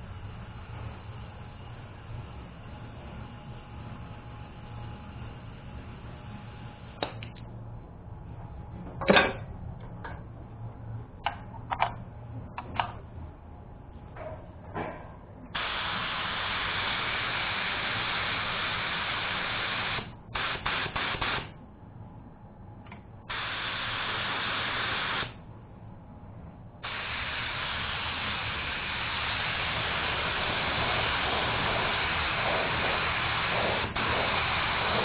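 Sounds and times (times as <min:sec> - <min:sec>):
paint spray gun hissing: 0:15.6 - 0:21.5, 0:23.3 - 0:25.4, 0:26.8 - 0:35.0.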